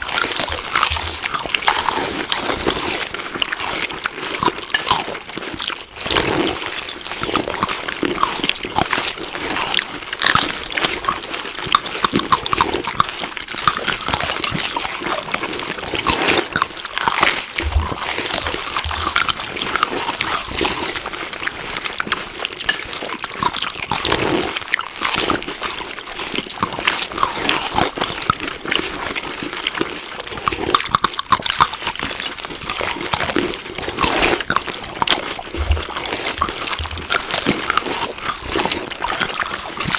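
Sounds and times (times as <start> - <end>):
chewing food: 0.0 - 39.9.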